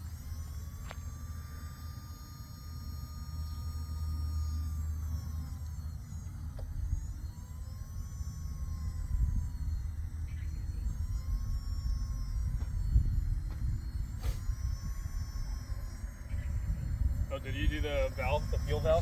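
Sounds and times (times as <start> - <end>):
turbine starter whine: 0.0 - 19.0.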